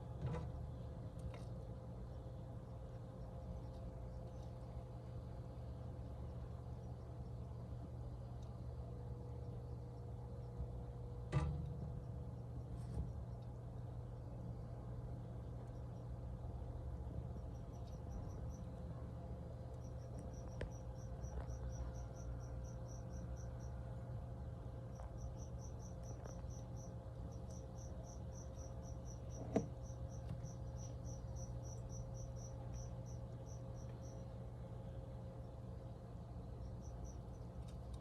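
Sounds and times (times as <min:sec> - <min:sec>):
constant low hum: 0:00.0 - 0:38.0
cricket chirping: 0:15.4 - 0:38.0.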